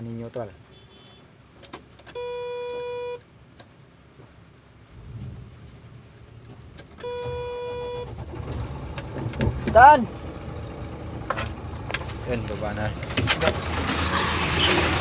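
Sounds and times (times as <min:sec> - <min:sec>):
electronic warning beeps: 0:02.2 - 0:03.2, 0:07.0 - 0:08.1
low engine rumble: 0:03.4 - 0:15.0.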